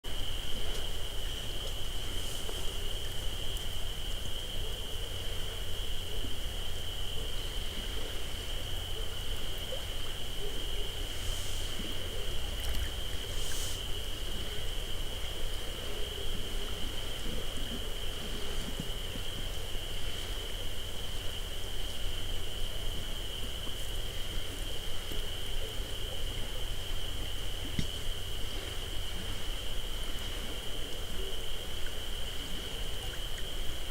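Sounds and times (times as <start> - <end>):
insect high trill: 0.1 - 16.2
hissy rustles: 0.1 - 21.2.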